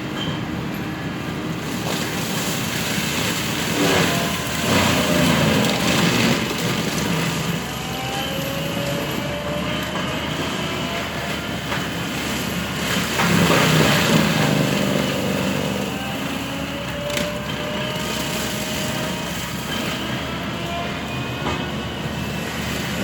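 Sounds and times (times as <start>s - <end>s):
forestry mulcher running: 0.0s - 23.0s.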